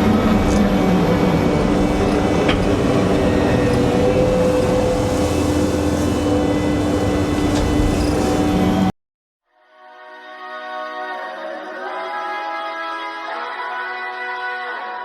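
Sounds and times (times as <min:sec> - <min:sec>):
vehicle engine droning: 0:00.0 - 0:08.9.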